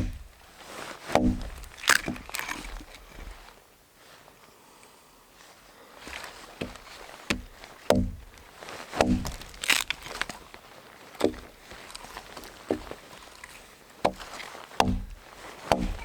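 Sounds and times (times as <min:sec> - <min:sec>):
hollow knocks and thuds: 0:00.0 - 0:00.3, 0:01.1 - 0:02.5, 0:06.6 - 0:08.4, 0:09.0 - 0:09.9, 0:11.2 - 0:11.6, 0:12.6 - 0:13.0, 0:14.0 - 0:16.0
rustling and crunching handling: 0:00.0 - 0:04.6, 0:05.4 - 0:16.0.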